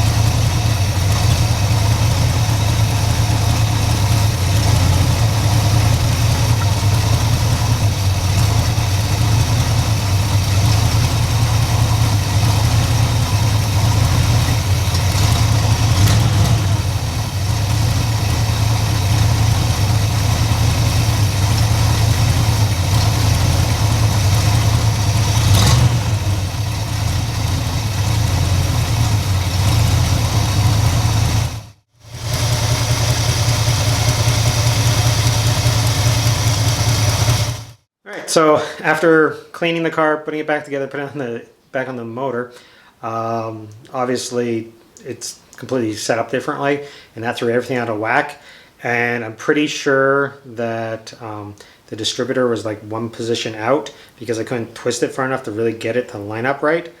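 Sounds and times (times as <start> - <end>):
car engine idling: 0.0 - 37.8.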